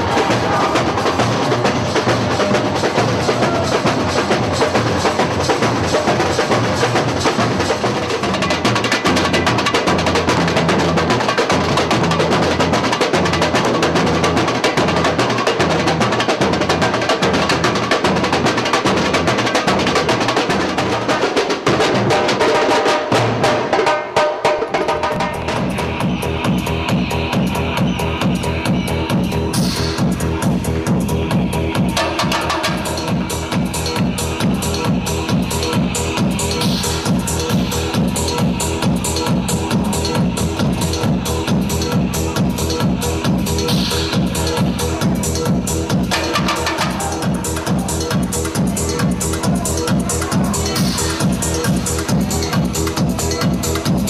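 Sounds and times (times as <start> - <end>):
samba percussion: 0.0 - 54.0
woodblock-like strokes: 32.0 - 54.0.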